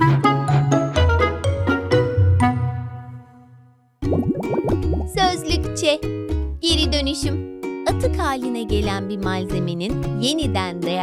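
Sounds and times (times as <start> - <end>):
plucked melody: 4.0 - 6.0
steady bass: 4.1 - 5.8.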